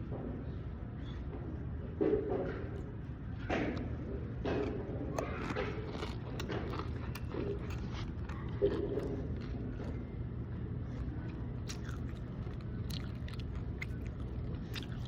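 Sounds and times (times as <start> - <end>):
steady low hum: 0.0 - 15.0
chips crunching while chewed: 5.1 - 10.1, 10.8 - 15.0.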